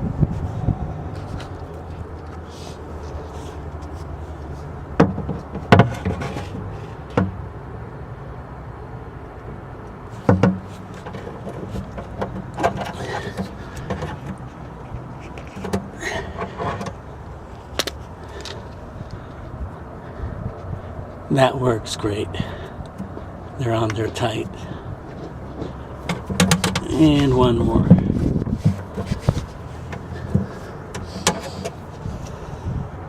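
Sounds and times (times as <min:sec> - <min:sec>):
light clattering of handling: 0:09.9 - 0:19.6, 0:22.7 - 0:32.4.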